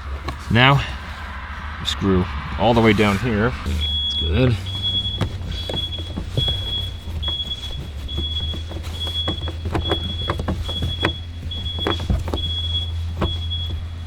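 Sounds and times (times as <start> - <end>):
clicks on plastic door panel: 4.7 - 14.0.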